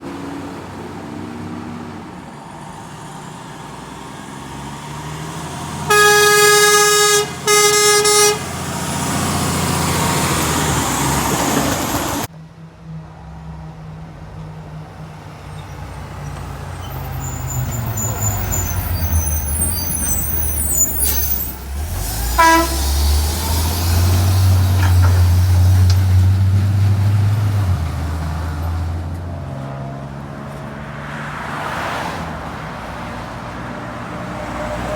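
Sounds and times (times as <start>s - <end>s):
truck passing rush: 0.0s - 34.9s
truck engine running: 2.4s - 12.3s, 13.4s - 29.1s
truck air horn blasts: 5.8s - 9.4s, 17.2s - 23.3s
short horn toot: 5.9s - 8.5s, 22.3s - 23.1s.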